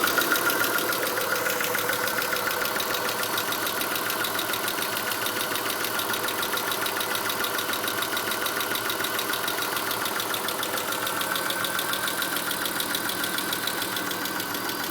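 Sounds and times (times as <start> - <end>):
car engine idling with ticking: 0.0 - 14.9.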